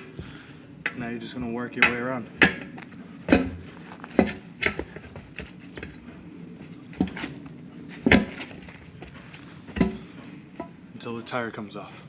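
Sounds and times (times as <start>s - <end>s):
tire spoons scraping wheel rim: 0.0s - 10.9s.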